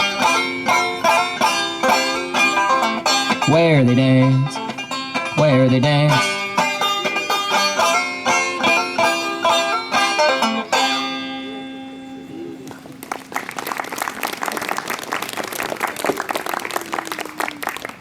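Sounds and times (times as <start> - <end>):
plucked acoustic string instrument: 0.0 - 12.4
audience clapping: 12.6 - 18.0.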